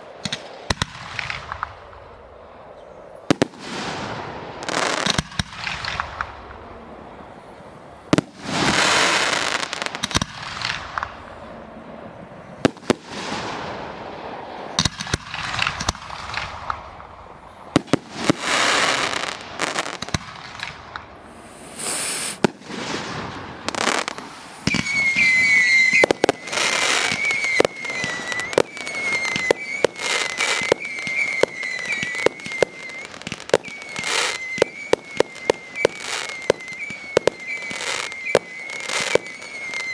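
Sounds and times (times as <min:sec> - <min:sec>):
firework crackling: 0:03.3 - 0:39.9
firework shells bursting: 0:20.0 - 0:32.8
high wavering whistle: 0:21.2 - 0:22.5, 0:23.8 - 0:39.9.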